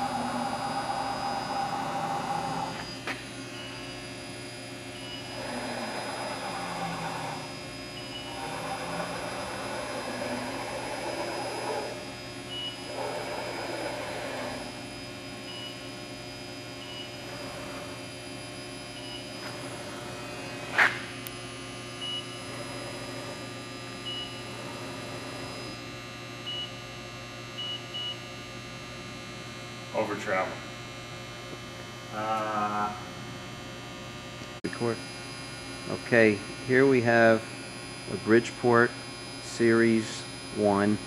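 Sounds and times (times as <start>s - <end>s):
milling machine electrical hum: 0.0s - 41.0s.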